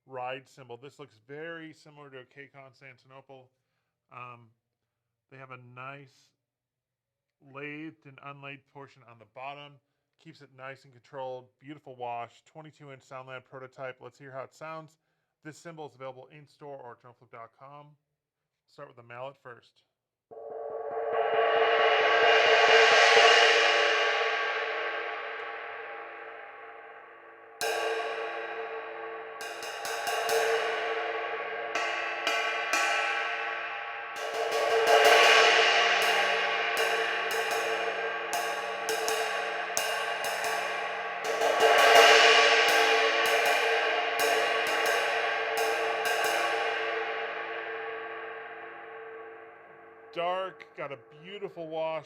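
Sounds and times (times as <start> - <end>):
mallet swell on ride cymbal: 20.4 - 51.0
ride cymbal struck repeatedly: 21.1 - 50.6.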